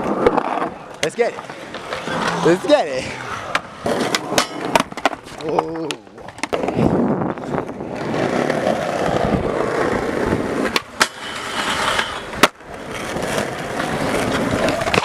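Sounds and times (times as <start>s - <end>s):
skateboard wheels rolling on pavement: 0.0s - 15.0s
skateboard clacks: 3.4s - 6.9s, 7.6s - 15.0s.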